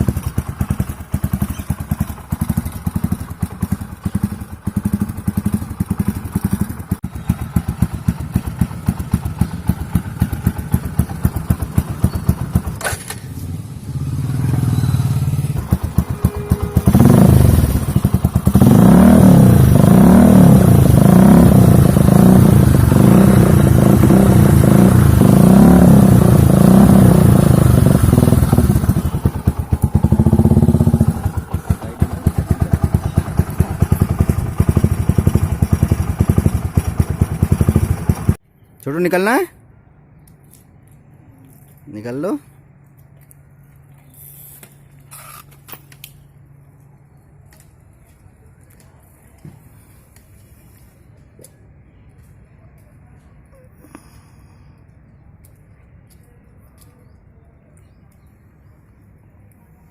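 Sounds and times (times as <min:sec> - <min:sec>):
motorcycle idling and revving: 0:00.0 - 0:38.4.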